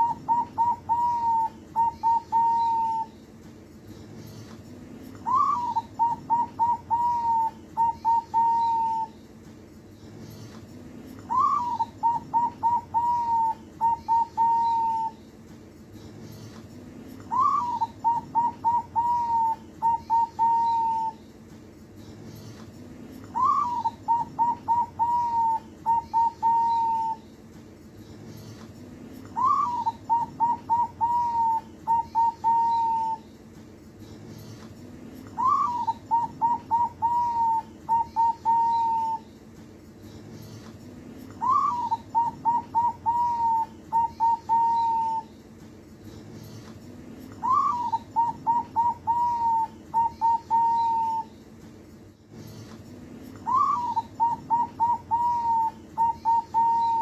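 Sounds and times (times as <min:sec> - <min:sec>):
dove cooing: 0:00.0 - 0:03.1, 0:05.2 - 0:09.2, 0:11.3 - 0:15.2, 0:17.3 - 0:21.2, 0:23.3 - 0:27.2, 0:29.2 - 0:33.2, 0:35.3 - 0:39.3, 0:41.4 - 0:45.3, 0:47.4 - 0:51.3, 0:53.4 - 0:57.0.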